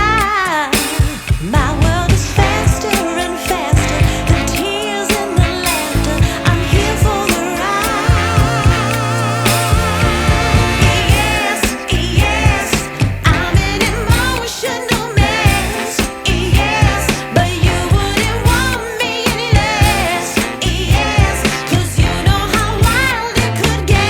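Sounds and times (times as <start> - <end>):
pop song with singer: 0.0 - 24.0
steady beat: 1.4 - 14.4.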